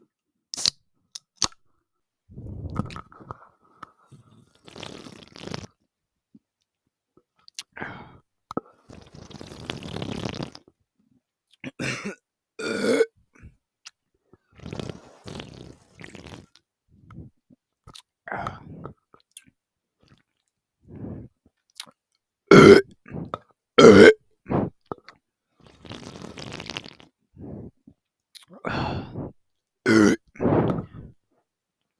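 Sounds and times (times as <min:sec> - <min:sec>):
person gulping and swallowing: 0:02.3 - 0:03.4, 0:04.7 - 0:05.7, 0:11.8 - 0:13.1, 0:14.6 - 0:16.4, 0:21.8 - 0:24.2, 0:29.9 - 0:31.1
throat and mouth sounds: 0:02.3 - 0:03.5, 0:04.5 - 0:05.7, 0:14.6 - 0:19.5, 0:21.8 - 0:25.1, 0:25.8 - 0:31.2
person burping: 0:11.7 - 0:13.1, 0:22.5 - 0:22.9, 0:23.8 - 0:24.2, 0:29.9 - 0:30.2.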